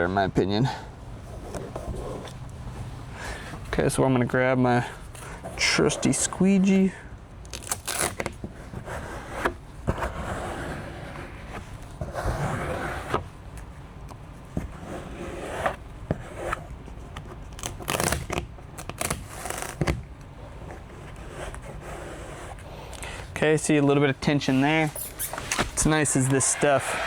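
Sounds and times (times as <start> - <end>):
squeegee scraping vinyl: 4.8 - 6.9, 7.5 - 13.4, 14.4 - 27.0.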